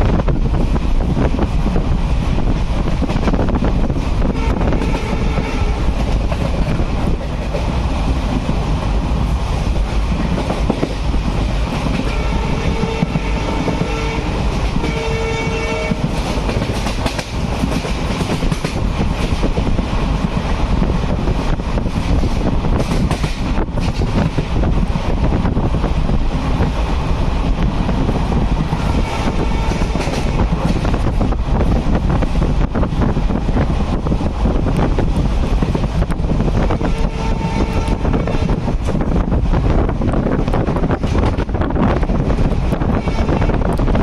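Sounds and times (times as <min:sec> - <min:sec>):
train rumbling and rattling on track: 0:00.0 - 0:44.0
locomotive horn blasts: 0:04.2 - 0:05.9, 0:12.1 - 0:16.1, 0:28.9 - 0:30.1, 0:36.7 - 0:38.6, 0:42.9 - 0:43.7.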